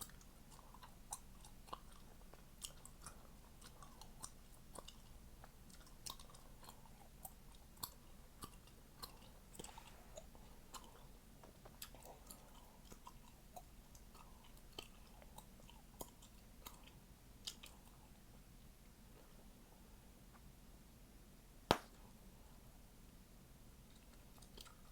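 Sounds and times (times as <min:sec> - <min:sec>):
person chewing gum: 0:00.0 - 0:18.4, 0:23.9 - 0:24.9
gum popping: 0:21.7 - 0:22.0.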